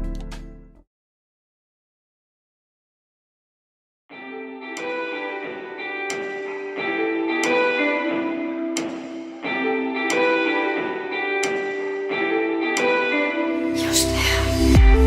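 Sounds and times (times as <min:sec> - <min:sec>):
guitar music with sustained notes: 0:04.1 - 0:15.0.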